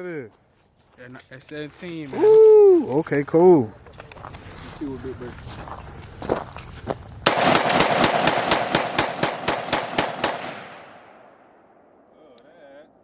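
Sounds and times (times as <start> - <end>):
pistol shots with echo: 7.2 - 12.1.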